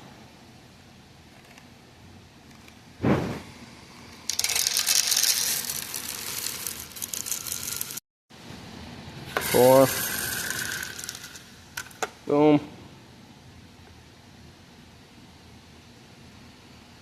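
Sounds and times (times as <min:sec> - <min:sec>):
corn kernels rattling and pouring: 0:04.2 - 0:08.0, 0:09.4 - 0:11.9
man speaking: 0:12.2 - 0:12.8.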